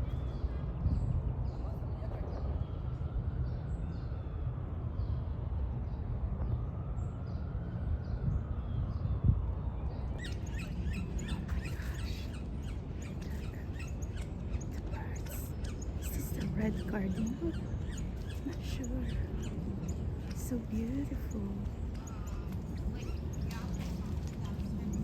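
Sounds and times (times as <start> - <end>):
steady low rumble: 0.0 - 25.0
small birds chirping: 9.9 - 25.0.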